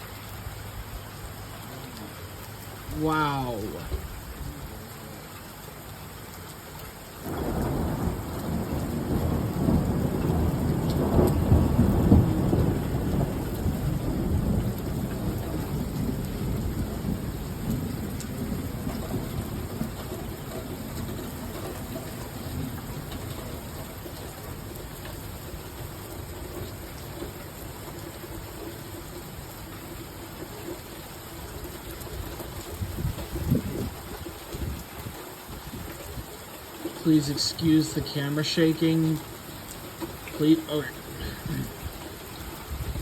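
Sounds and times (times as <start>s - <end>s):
heavy rain falling: 0.0s - 43.0s
thunderclap and deep rumble: 7.2s - 24.3s, 32.6s - 36.3s, 41.1s - 43.0s.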